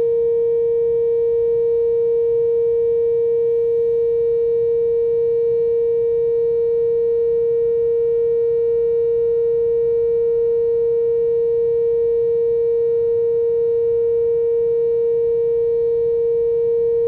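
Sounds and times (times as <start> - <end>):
warning siren steady tone: 3.4 - 5.6.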